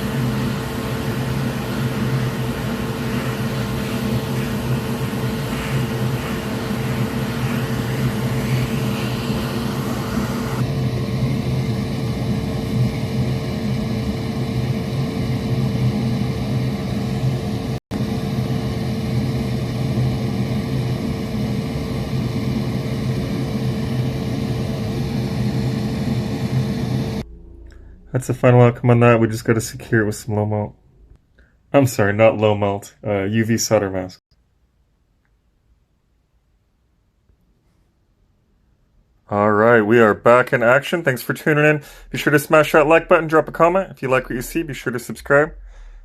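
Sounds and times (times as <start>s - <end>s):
low drone: 0.0s - 20.0s, 21.0s - 31.2s, 41.8s - 46.0s
fan whirring hum: 0.0s - 31.2s, 39.7s - 46.0s.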